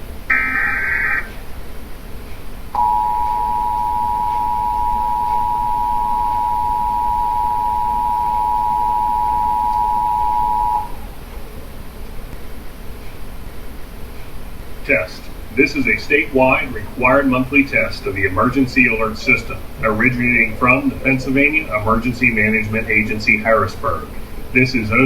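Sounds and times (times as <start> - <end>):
digital data burst screech: 0.3 - 1.4
two-tone attention signal: 2.8 - 11.1.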